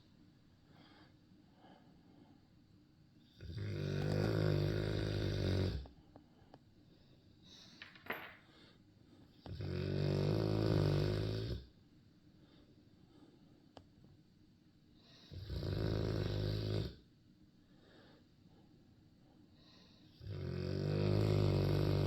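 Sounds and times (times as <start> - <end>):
loud snoring: 3.4 - 5.9, 9.5 - 11.7, 15.3 - 17.0, 20.2 - 22.0.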